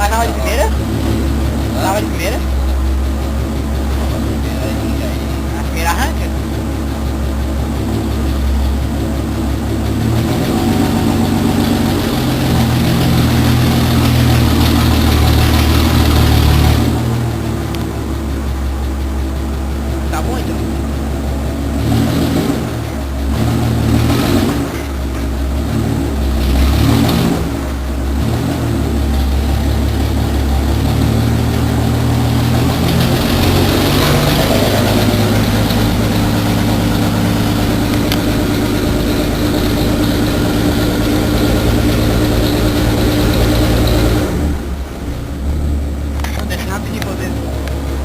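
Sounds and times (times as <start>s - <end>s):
engine rumbling and revving: 0.0s - 48.0s.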